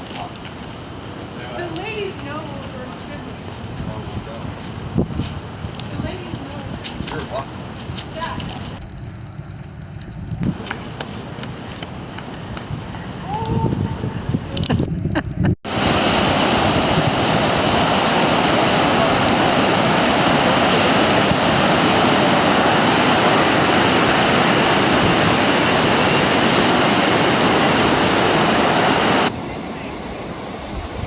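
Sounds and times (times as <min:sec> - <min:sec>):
waves breaking on beach: 0:00.0 - 0:08.8, 0:15.6 - 0:31.0.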